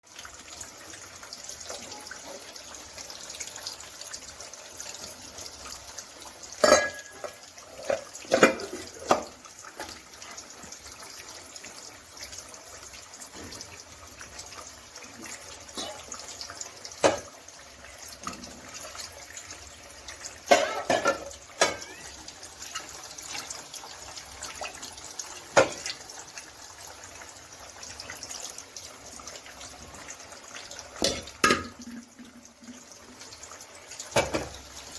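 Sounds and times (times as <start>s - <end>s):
pots and utensils clattering: 4.8s - 10.6s, 15.2s - 17.5s, 18.1s - 26.2s, 30.8s - 32.8s, 33.9s - 34.9s.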